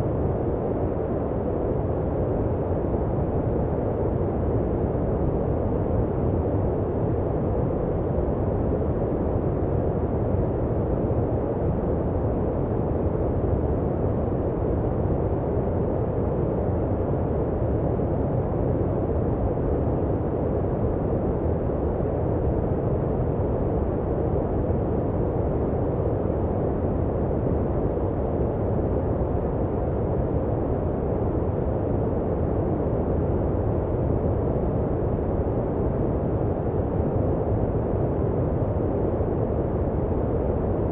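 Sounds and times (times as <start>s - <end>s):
deep steady noise rush: 0.0s - 40.9s.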